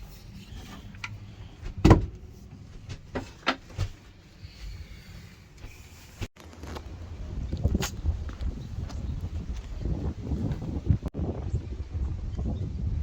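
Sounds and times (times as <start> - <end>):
knocks and clunks of handling: 0.5 - 4.2.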